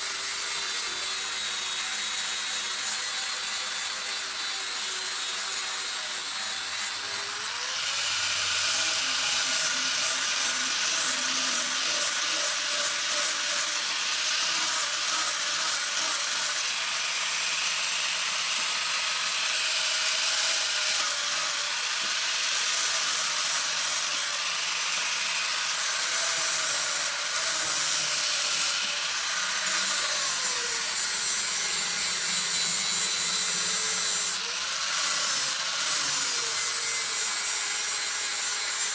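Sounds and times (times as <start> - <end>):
power grinder grinding steel: 0.0 - 38.9.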